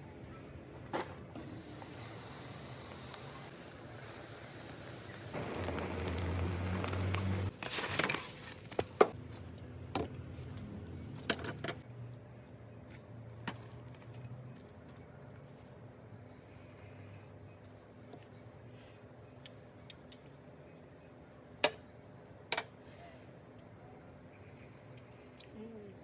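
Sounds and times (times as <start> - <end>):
fish grilling hiss: 1.4 - 7.5.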